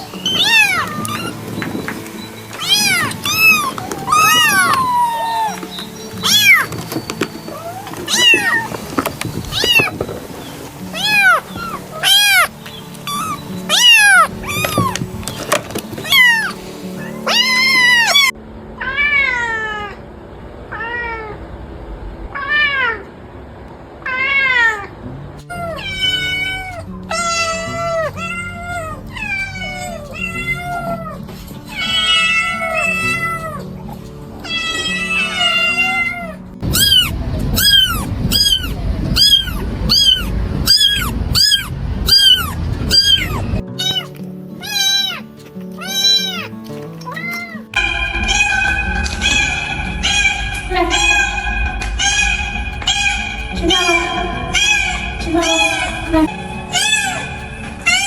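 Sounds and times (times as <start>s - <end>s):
cats meowing: 0.0s - 20.1s, 20.7s - 21.5s, 22.3s - 23.1s, 24.0s - 58.0s.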